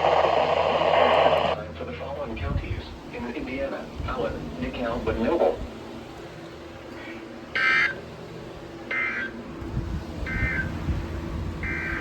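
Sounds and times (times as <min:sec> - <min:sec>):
faint steady radio hum: 0:00.0 - 0:09.5.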